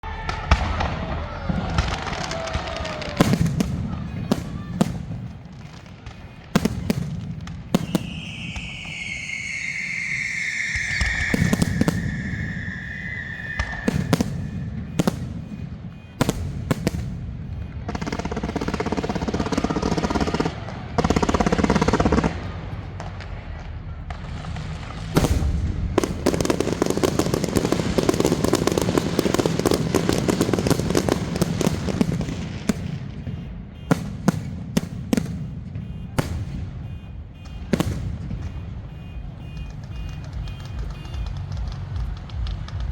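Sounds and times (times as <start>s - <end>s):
firework whistle falling: 0.0s - 4.7s, 5.8s - 17.8s, 35.2s - 42.8s
firework bangs: 0.0s - 42.9s
firework crackling: 0.0s - 42.9s.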